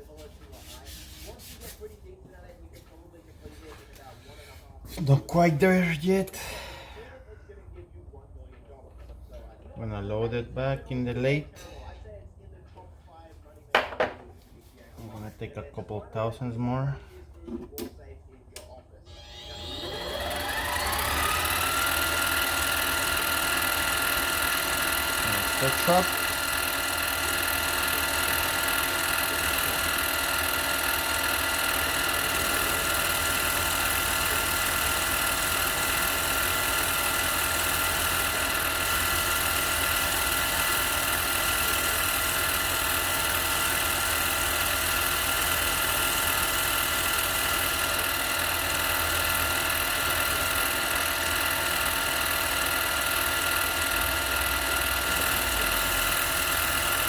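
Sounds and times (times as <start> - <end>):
lathe motor whine: 19.1 - 57.0.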